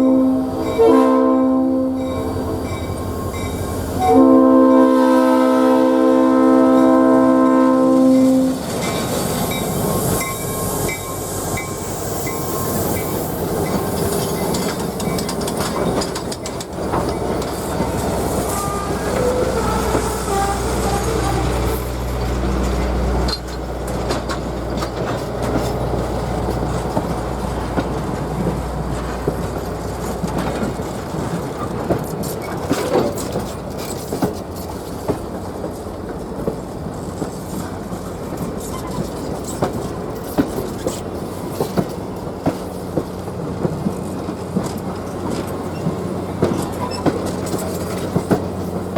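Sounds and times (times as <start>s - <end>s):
locomotive horn chord: 0.0s - 2.7s, 4.0s - 8.6s, 18.5s - 21.8s
train rumbling past: 0.0s - 48.9s
wheel clicks over rail joints: 13.6s - 18.0s, 22.6s - 48.9s.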